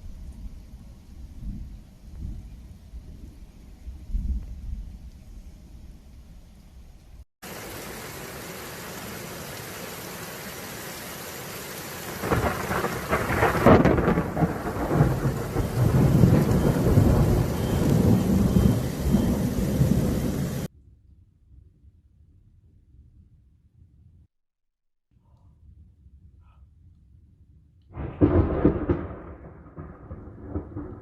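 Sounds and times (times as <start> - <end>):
heavy rain: 7.4 - 20.7, 28.0 - 31.0
thunder rumbling: 12.0 - 20.7, 27.9 - 31.0.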